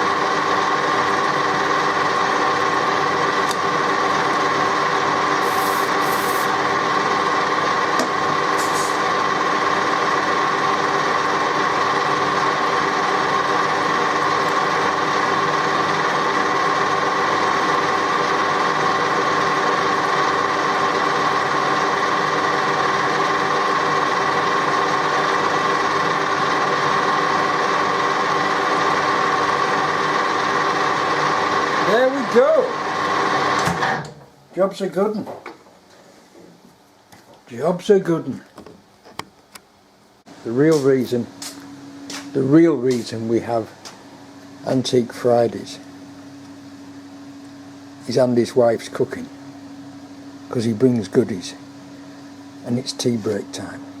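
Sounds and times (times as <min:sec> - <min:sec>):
drill humming into metal: 0:00.0 - 0:34.2.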